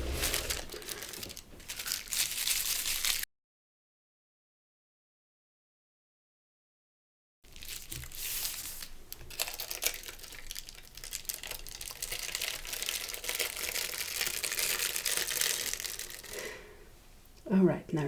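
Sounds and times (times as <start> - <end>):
paper rustling and crinkling: 0.0 - 3.3, 7.5 - 16.4.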